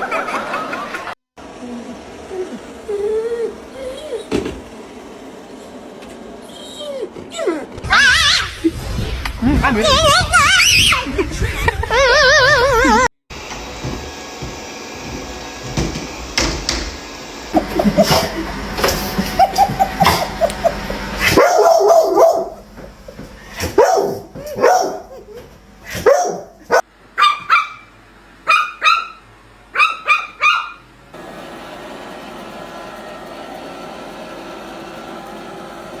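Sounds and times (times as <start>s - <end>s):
dog barking: 21.2s - 22.6s, 23.6s - 25.1s, 25.9s - 30.8s.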